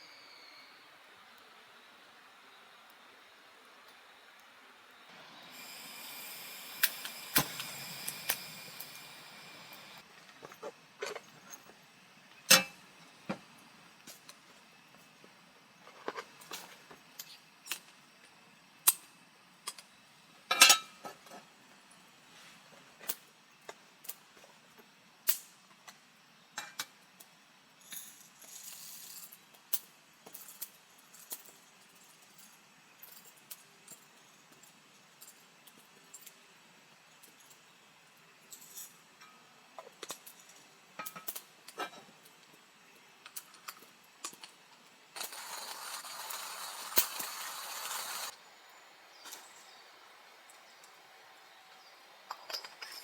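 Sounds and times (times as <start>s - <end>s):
steady hiss: 0.0s - 10.3s, 36.4s - 53.0s
cookware and utensils clinking: 20.5s - 21.4s, 52.3s - 53.0s.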